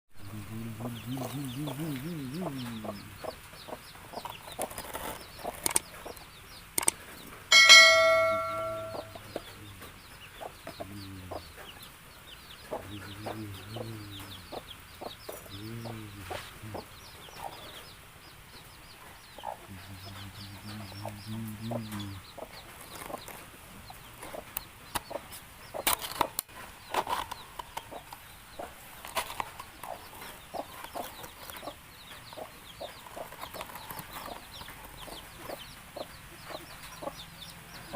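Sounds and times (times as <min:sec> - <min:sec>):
chickens clucking: 0:00.2 - 0:37.9
loud ringing tone: 0:07.5 - 0:09.2.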